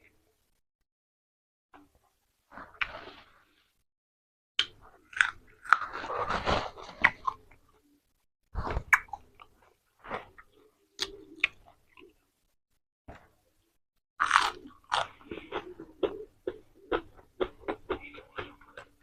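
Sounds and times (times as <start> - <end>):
chewing and crunching food: 4.6 - 7.9, 8.7 - 12.3, 14.2 - 19.0.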